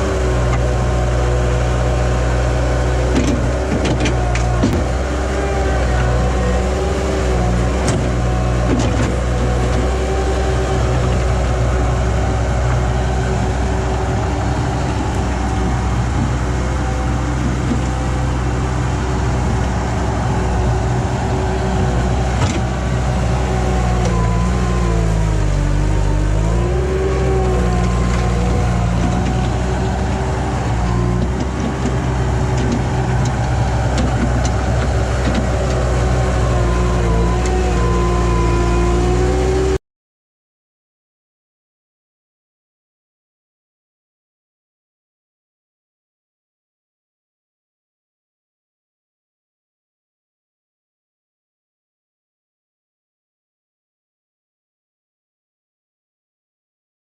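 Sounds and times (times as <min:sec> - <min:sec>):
skid steer engine running: 0:00.0 - 0:39.8.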